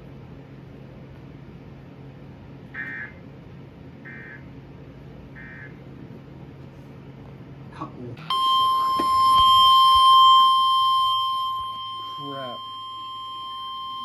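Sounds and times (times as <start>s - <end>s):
faint static hum: 0.0s - 14.0s
steady alarm tone: 8.2s - 14.0s.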